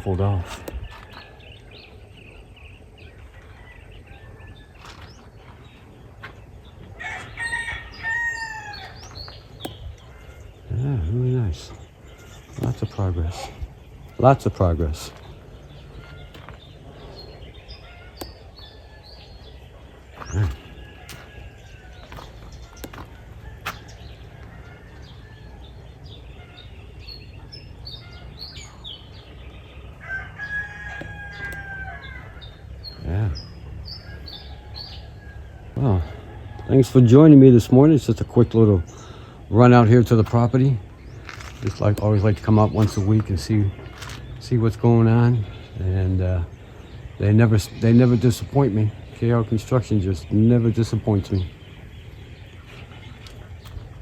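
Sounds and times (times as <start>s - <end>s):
small birds chirping: 0.0s - 54.0s
rooster crowing: 7.0s - 9.1s, 20.5s - 22.3s, 23.0s - 25.8s, 30.0s - 32.6s.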